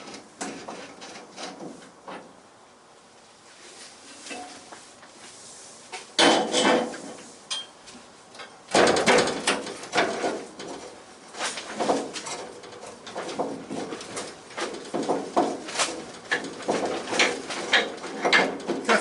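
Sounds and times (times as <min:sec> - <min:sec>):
metal clanking and knocking: 0:06.2 - 0:07.7, 0:08.4 - 0:19.0.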